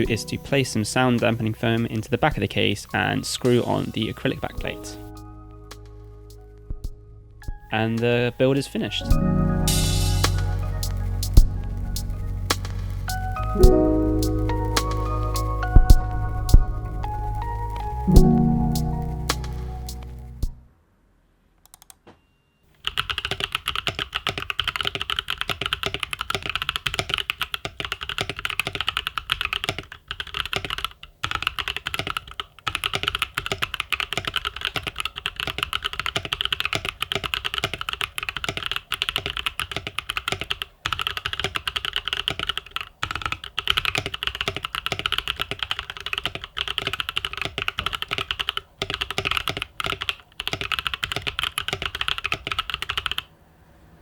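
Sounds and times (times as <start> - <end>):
mechanical keyboard typing: 22.8 - 53.3.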